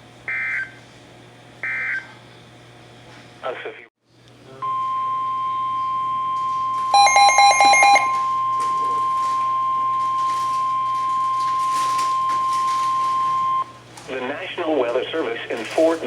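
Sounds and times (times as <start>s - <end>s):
steady loud alarm tone: 1.6s - 2.1s, 4.6s - 13.7s
short high beeps: 4.6s - 13.6s.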